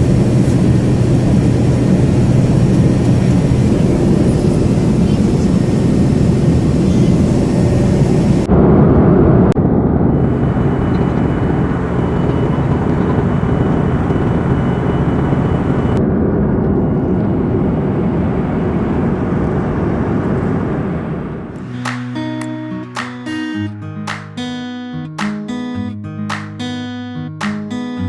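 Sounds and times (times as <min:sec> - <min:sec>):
jet engine and airflow noise in cabin: 0:00.0 - 0:21.3.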